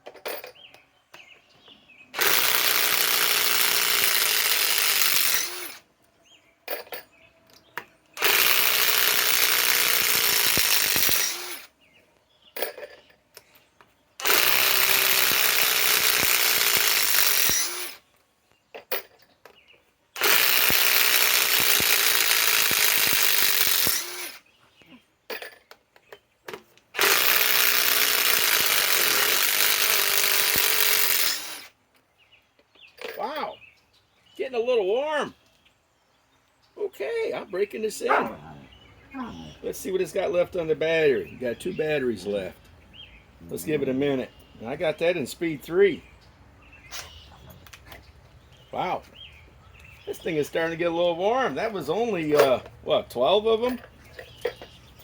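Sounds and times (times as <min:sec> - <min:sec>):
impact wrench hammering: 0:14.2 - 0:18.0.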